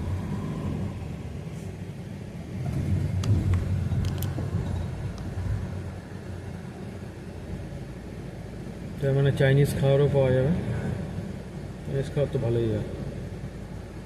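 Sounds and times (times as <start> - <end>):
motor vehicle rumble: 0.0 - 14.0.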